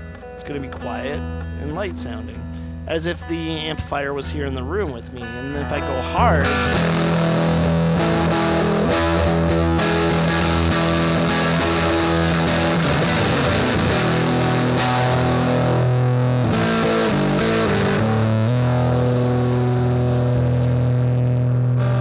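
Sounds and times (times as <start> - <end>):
distorted electric guitar chords: 0.0 - 22.0.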